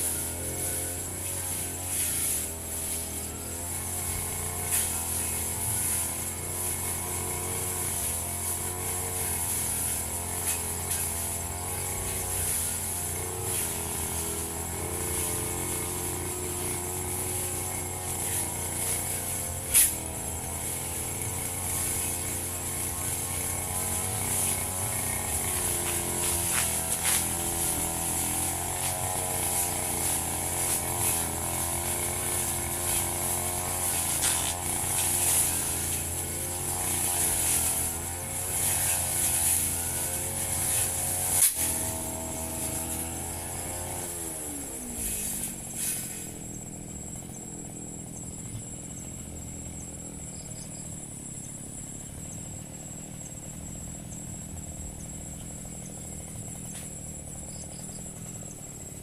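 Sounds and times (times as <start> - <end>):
brush cutter engine running: 0.0 - 59.0
insects chirring: 0.0 - 59.0.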